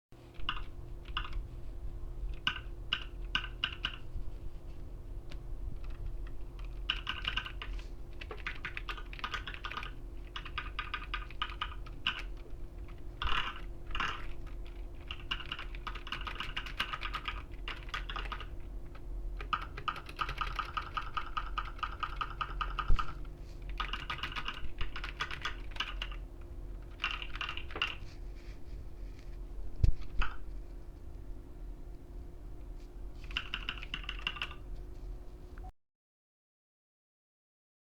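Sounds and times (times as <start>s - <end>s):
computer keyboard typing: 0.4s - 1.5s, 2.3s - 4.1s, 5.8s - 26.2s, 26.8s - 28.2s, 30.0s - 30.5s, 33.2s - 34.6s.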